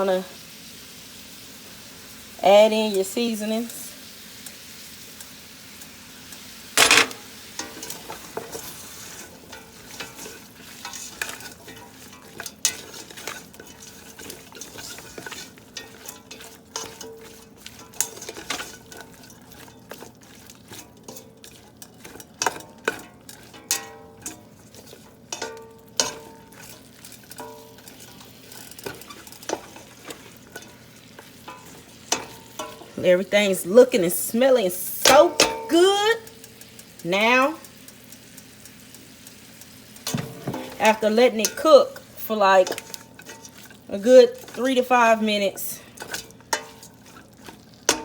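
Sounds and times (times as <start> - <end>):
cabbage sizzling in a pan: 0.0 - 48.0
utensil scraping and knocking pan: 6.8 - 33.0, 40.0 - 41.7.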